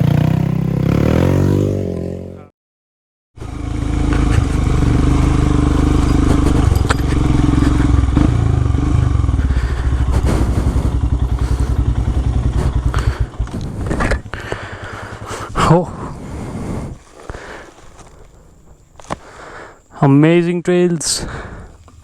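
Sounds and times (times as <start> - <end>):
motorcycle engine running: 0.0 - 2.4, 3.4 - 16.9
motorcycle clattering over rough ground: 3.6 - 16.2.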